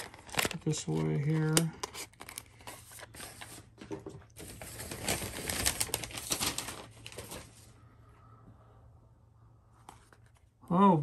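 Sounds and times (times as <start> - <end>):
packaging crinkling and rustling: 0.0 - 7.7.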